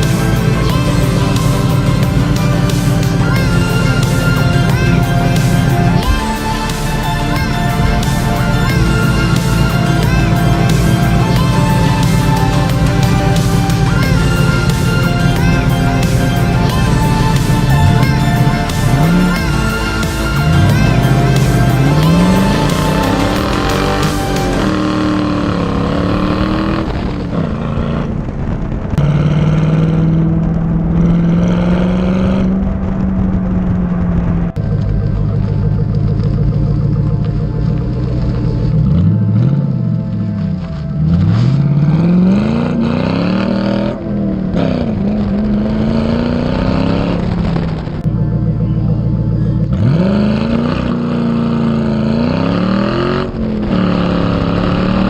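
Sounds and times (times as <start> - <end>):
car engine running: 0.0 - 55.0
wind rushing over camera: 25.1 - 42.4.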